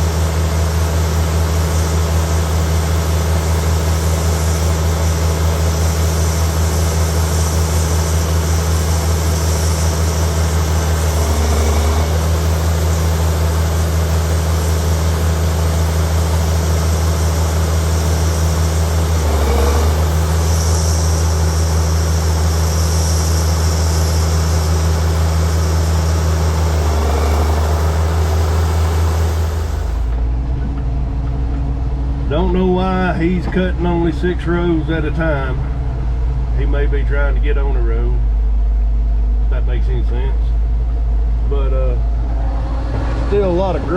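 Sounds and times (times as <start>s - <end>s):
diesel machinery drone: 0.0s - 43.9s.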